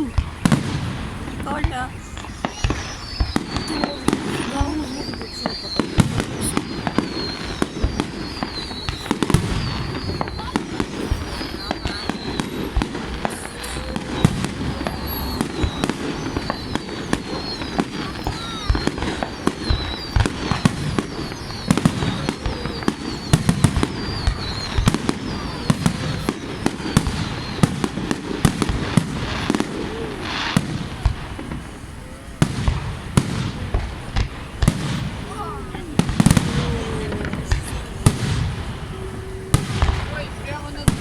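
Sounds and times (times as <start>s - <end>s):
fireworks bangs and crackles: 0.0s - 41.0s
high firework whistle: 0.0s - 41.0s.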